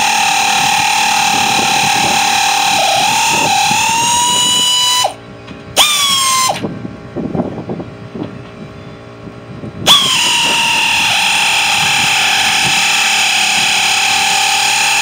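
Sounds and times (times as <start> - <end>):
power drill whining: 0.0 - 5.2, 5.8 - 6.6, 9.9 - 15.0.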